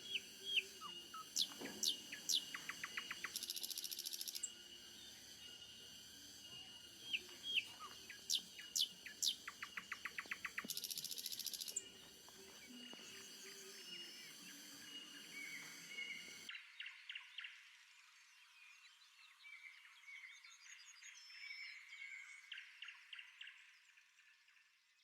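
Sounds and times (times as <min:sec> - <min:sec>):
birds chirping and calling: 0:00.0 - 0:04.5, 0:07.1 - 0:11.9
rapid bird trill: 0:00.0 - 0:12.0
insects droning: 0:00.0 - 0:16.6.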